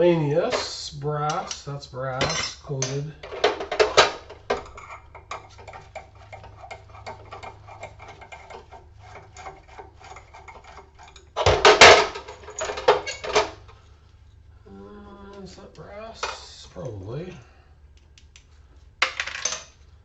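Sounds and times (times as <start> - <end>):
metal parts clinking: 0.5 - 4.8, 11.4 - 13.5
loud metal clatter: 11.4 - 13.6.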